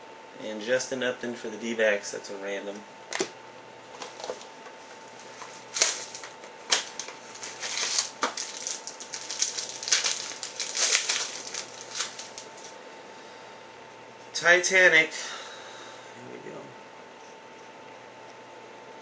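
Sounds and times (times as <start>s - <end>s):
card packaging crinkling and clicking: 3.9s - 12.8s.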